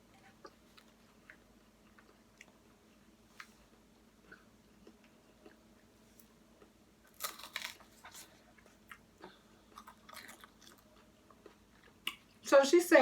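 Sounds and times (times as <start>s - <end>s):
soft chewing with mouth clicks: 0.1s - 12.4s
crisp crunching: 7.1s - 8.4s.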